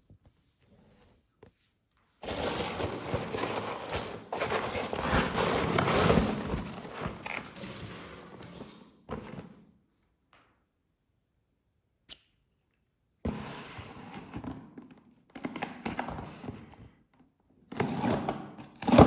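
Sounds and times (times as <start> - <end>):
packaging crinkling and rustling: 2.2 - 8.9.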